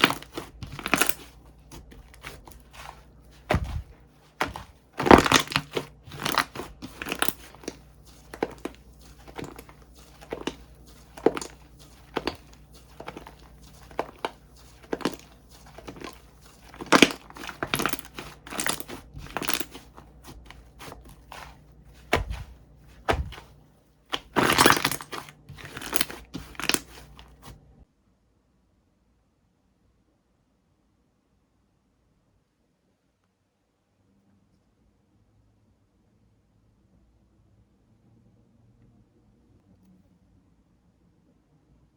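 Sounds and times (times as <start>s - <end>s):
slime crackling pops: 0.0s - 23.5s, 24.1s - 27.1s.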